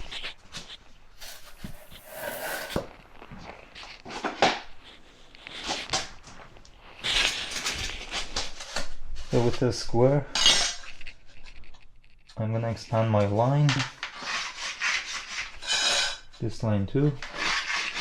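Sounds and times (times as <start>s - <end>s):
planks and tools scraping on floor: 0.0s - 3.0s, 13.8s - 16.3s, 17.2s - 18.0s.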